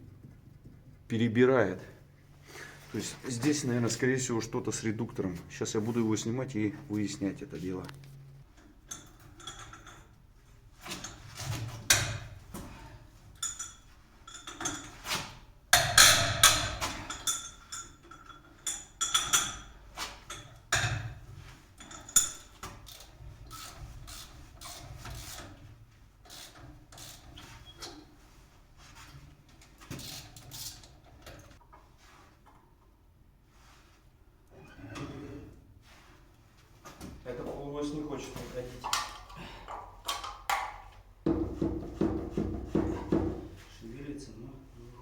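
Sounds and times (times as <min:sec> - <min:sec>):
hand tools knocking on metal: 0:00.0 - 0:01.2, 0:15.7 - 0:19.7, 0:39.7 - 0:43.6
metal clinks and scrapes: 0:08.6 - 0:10.2, 0:10.8 - 0:28.1.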